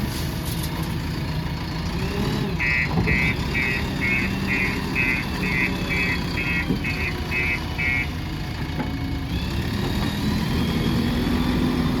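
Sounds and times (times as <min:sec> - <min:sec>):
diesel engine running: 0:00.0 - 0:12.0
reversing alarm beeping: 0:02.6 - 0:08.2.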